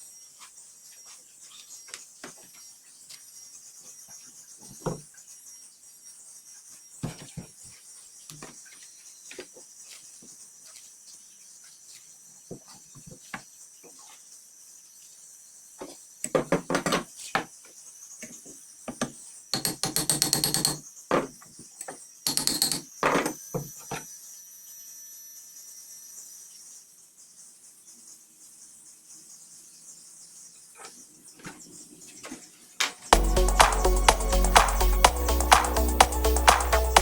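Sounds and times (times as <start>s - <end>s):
hand tool knocks and taps: 18.9s - 21.3s.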